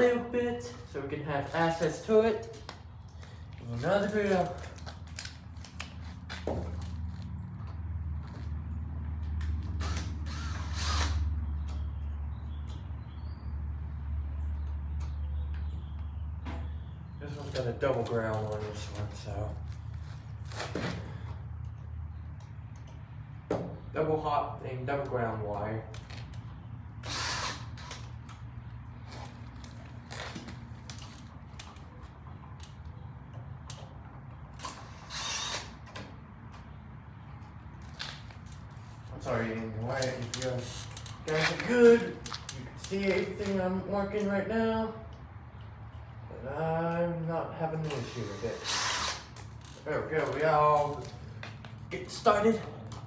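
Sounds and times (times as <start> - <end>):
outlet creaking and scraping: 0.0 - 7.4, 17.3 - 21.6, 28.9 - 32.2, 37.5 - 43.6, 47.8 - 52.0.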